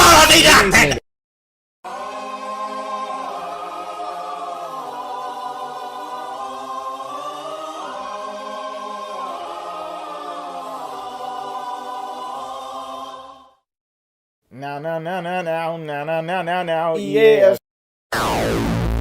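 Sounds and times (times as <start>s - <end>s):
choir singing wordless chords: 1.8s - 13.7s, 14.6s - 17.6s.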